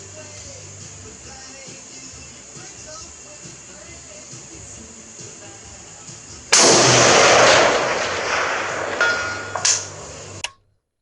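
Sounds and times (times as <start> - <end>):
rifle shot: 6.5 - 10.4
faint ringing of steel target: 6.6 - 10.4.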